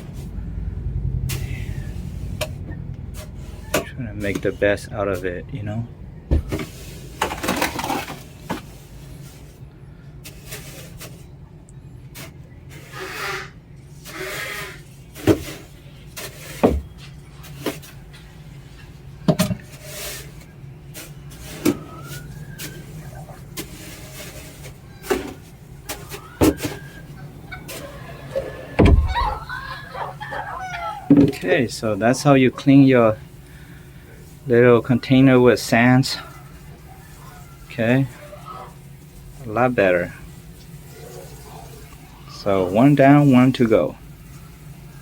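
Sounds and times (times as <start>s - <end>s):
low steady hum: 0.0s - 45.0s
sand scraped in plastic container: 10.2s - 11.3s, 12.2s - 16.7s, 19.6s - 40.2s.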